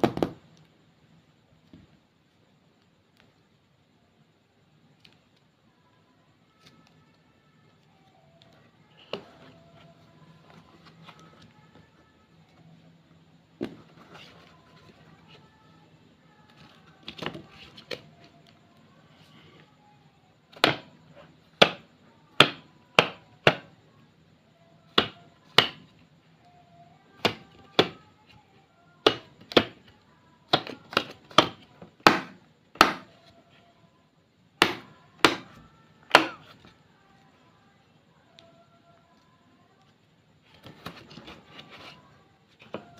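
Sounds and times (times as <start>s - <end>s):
faint music: 0.0s - 42.9s.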